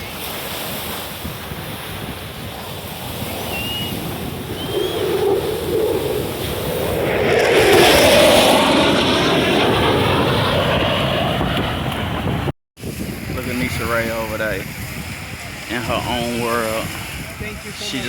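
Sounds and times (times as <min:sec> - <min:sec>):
surf: 0:00.0 - 0:10.2, 0:12.8 - 0:18.0
wind on microphone: 0:00.0 - 0:18.0
airplane engine flying past: 0:02.6 - 0:12.5.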